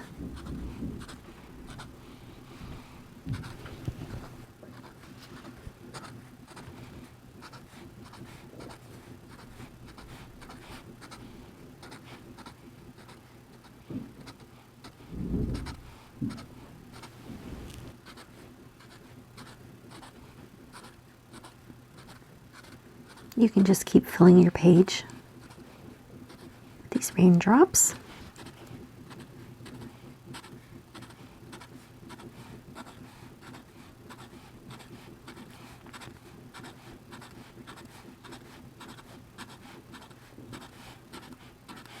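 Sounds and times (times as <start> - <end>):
dull low bumps: 15.1 - 16.4
marker drawing on paper: 29.1 - 42.0.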